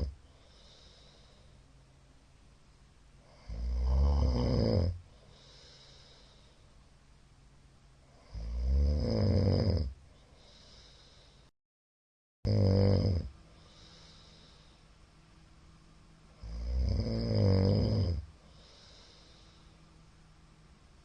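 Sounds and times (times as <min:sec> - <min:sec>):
quiet breathing: 0:00.0 - 0:02.3, 0:03.1 - 0:07.1, 0:09.8 - 0:11.5, 0:13.0 - 0:21.0
man snoring loudly: 0:03.3 - 0:05.0, 0:08.2 - 0:10.0, 0:12.5 - 0:13.3, 0:16.4 - 0:18.8.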